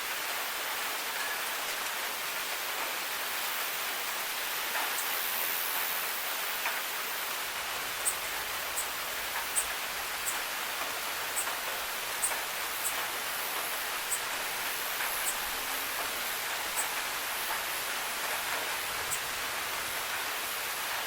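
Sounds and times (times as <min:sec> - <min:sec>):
steady rain hiss: 0:00.0 - 0:21.0
drip ticks: 0:08.0 - 0:14.3.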